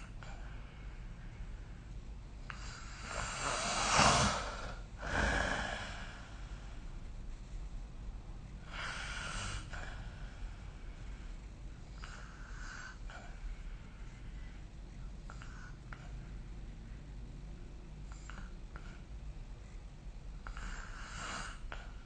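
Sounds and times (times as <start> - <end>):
person snoring: 2.8 - 6.4.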